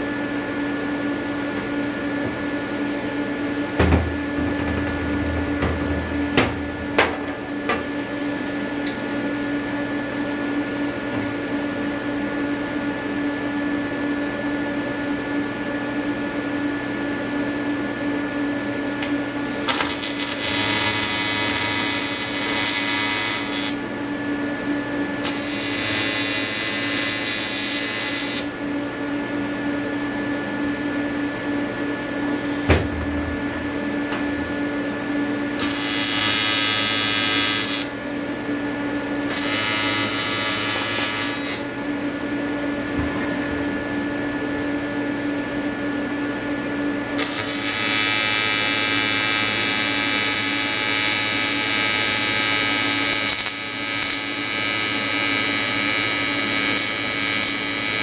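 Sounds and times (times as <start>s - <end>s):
hissy welding noise: 19.0s - 23.8s, 25.2s - 28.5s, 35.6s - 37.9s, 39.3s - 41.6s, 47.2s - 58.0s
welding arc buzzing: 19.0s - 23.8s, 25.2s - 28.6s, 35.5s - 38.0s, 39.3s - 41.7s, 47.2s - 58.0s.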